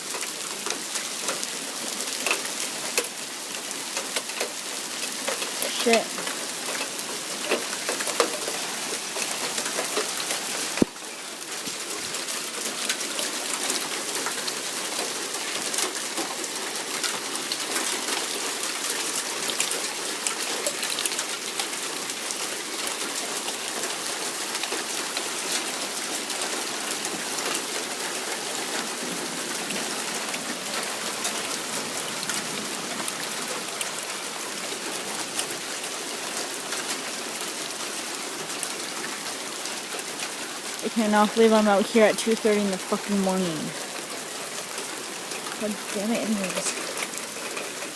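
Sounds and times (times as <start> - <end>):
heavy rain hissing: 0.6 - 34.1.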